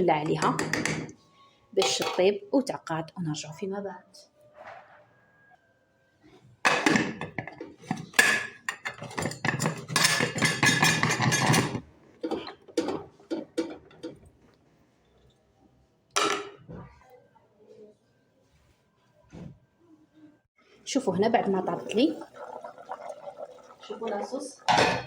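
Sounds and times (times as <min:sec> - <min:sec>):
metal lid clattering on pot: 0:01.8 - 0:02.2, 0:06.7 - 0:14.2, 0:24.7 - 0:25.0.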